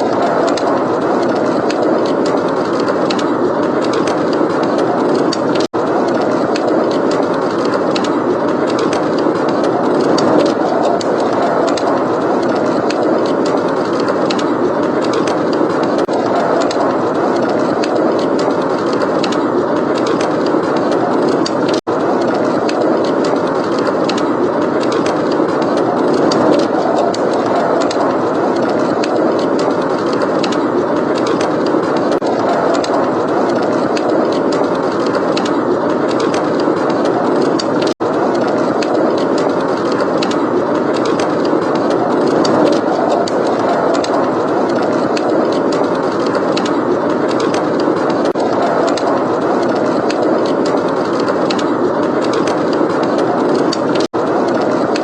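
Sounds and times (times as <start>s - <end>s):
blizzard wind blowing: 0.0s - 55.0s
wood fire crackling: 0.0s - 55.0s.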